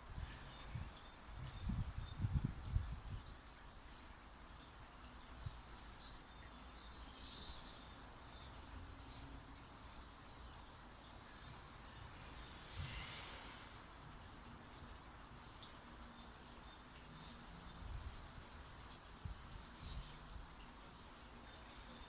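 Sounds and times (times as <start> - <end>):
small bird chirping trills: 0.1 - 13.4
faint rustle: 10.4 - 22.0.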